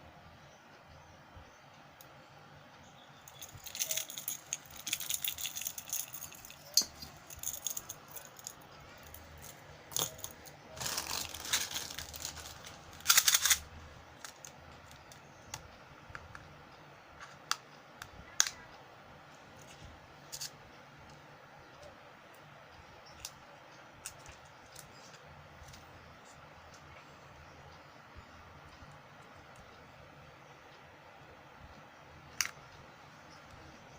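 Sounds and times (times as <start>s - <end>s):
fishing lures rattling and clicking: 3.3s - 15.1s.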